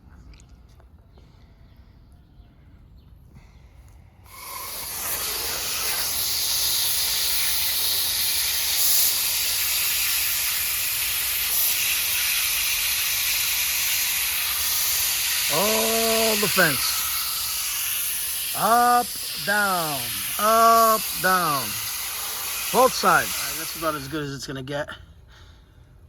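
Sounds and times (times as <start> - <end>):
spray cleaner hissing: 4.3 - 24.3.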